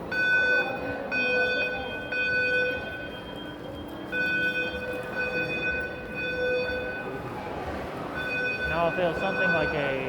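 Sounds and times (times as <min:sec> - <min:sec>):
fire alarm electronic tone pulses: 0:00.1 - 0:07.1.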